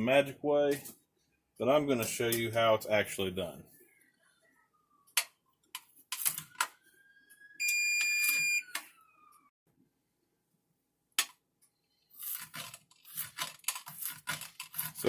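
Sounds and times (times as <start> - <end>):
electronic beep: 7.6 - 8.8.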